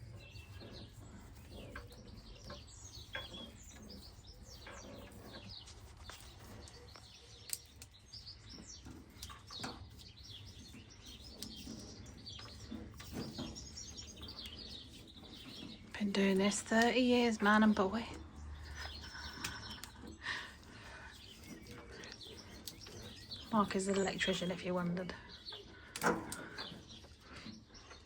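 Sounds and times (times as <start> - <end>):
small birds chirping: 0.0 - 28.0
low background hum: 9.9 - 27.8.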